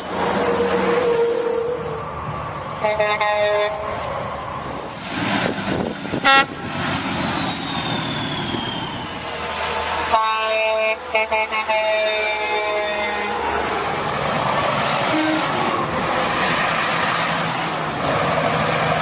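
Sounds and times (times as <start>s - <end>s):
steady road noise: 0.0s - 19.0s
vehicle horns: 2.8s - 4.0s, 6.1s - 6.6s, 10.1s - 13.4s, 15.1s - 15.9s.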